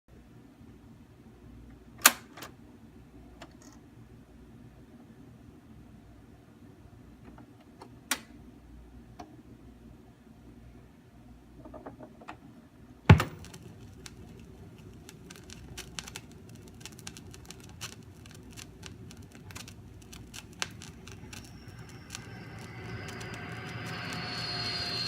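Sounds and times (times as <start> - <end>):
stylus thump on record: 13.1 - 13.5
vinyl crackle and pops: 13.1 - 25.0
low hum: 18.3 - 25.0
high whine: 18.7 - 25.0.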